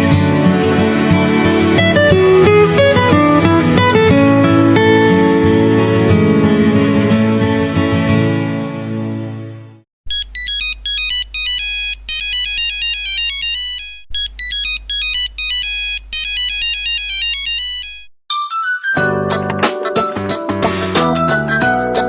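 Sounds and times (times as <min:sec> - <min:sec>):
mobile phone ringtone melody: 0:10.1 - 0:19.2.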